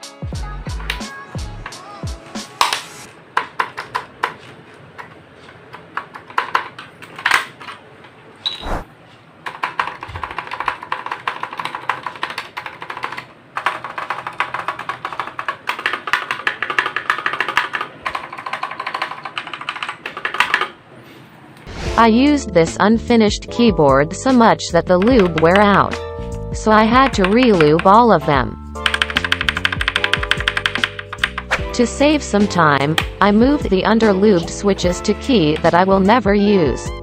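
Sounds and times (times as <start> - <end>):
clicky mechanical keyboard typing: 9.4 - 20.8, 24.9 - 25.9, 26.7 - 28.2, 28.8 - 31.5.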